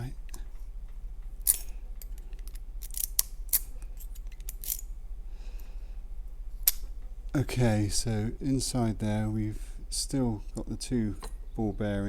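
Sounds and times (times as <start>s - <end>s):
metallic clicks of padlock parts: 0.3s - 4.9s, 6.6s - 7.0s.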